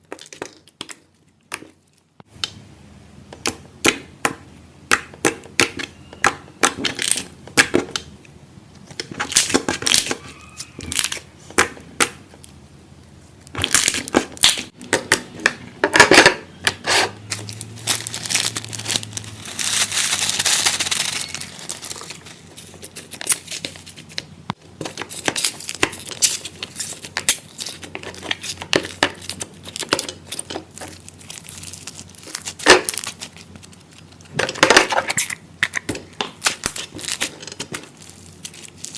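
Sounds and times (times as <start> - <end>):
foam bead slime crunching: 16.6 - 24.2, 24.8 - 35.8, 36.4 - 38.9.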